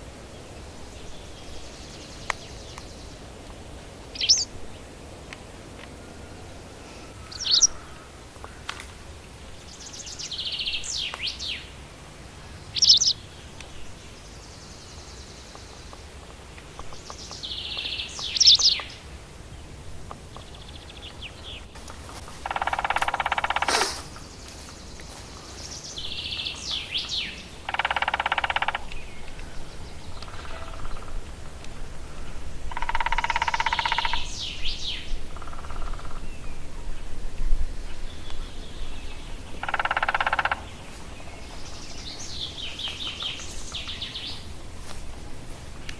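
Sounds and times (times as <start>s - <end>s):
small birds chirping: 0.4s - 5.0s, 6.8s - 45.9s
woodpecker drumming: 21.8s - 24.3s, 26.2s - 34.5s, 35.3s - 36.2s, 39.5s - 40.9s.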